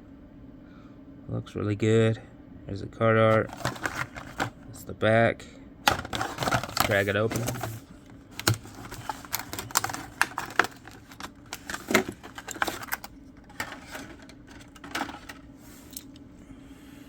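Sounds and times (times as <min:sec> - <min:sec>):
plastic packaging cracking: 0:08.4 - 0:15.0.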